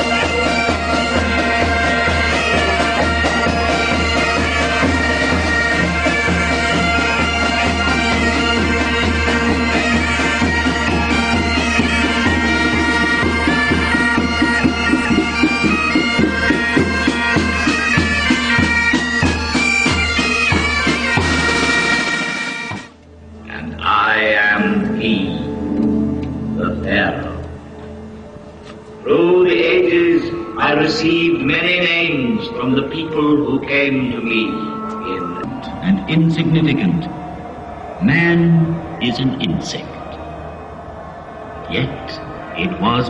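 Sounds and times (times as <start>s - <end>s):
reedy wind melody: 0.0s - 43.0s
held drone notes: 22.9s - 42.8s.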